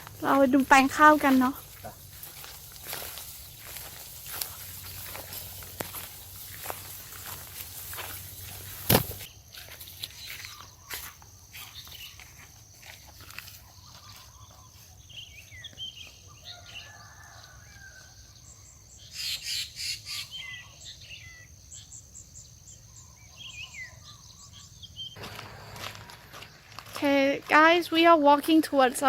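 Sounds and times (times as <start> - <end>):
crackling noise: 0.0 - 9.3, 25.2 - 27.8
birds chirping: 0.0 - 9.4, 18.6 - 29.0.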